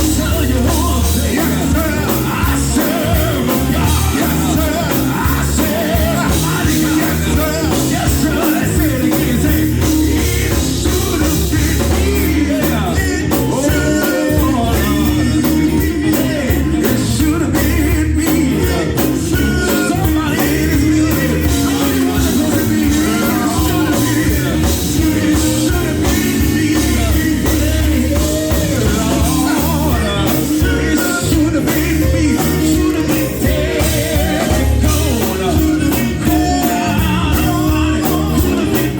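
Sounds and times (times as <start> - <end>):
gospel band playing: 0.0 - 38.9
voices singing: 0.0 - 38.9.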